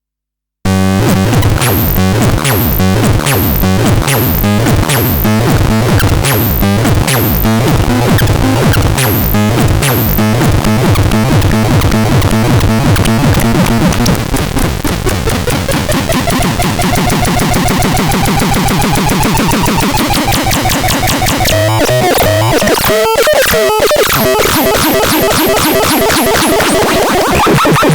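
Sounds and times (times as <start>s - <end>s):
fast pulsing synth sequence: 0.7s - 27.9s.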